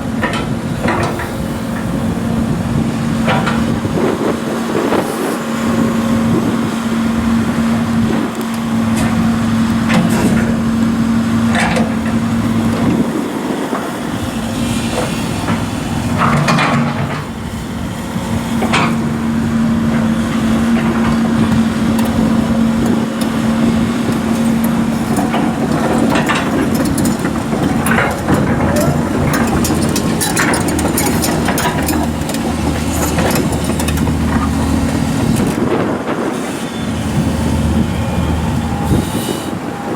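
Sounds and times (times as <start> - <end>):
machine knocks and clanks: 0.0 - 2.1, 3.2 - 3.9, 11.4 - 13.1, 14.7 - 17.5, 18.6 - 19.1, 19.9 - 36.2
excavator diesel engine running: 0.0 - 39.9.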